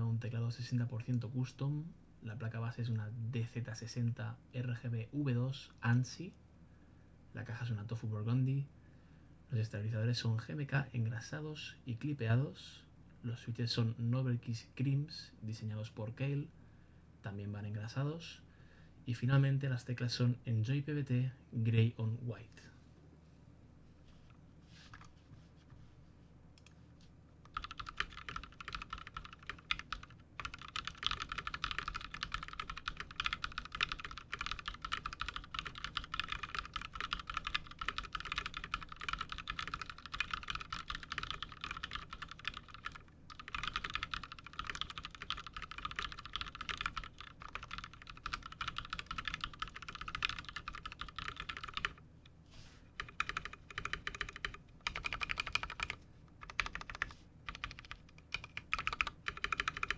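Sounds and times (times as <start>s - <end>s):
fast typing on mechanical keyboard: 27.5s - 52.0s, 53.0s - 59.9s.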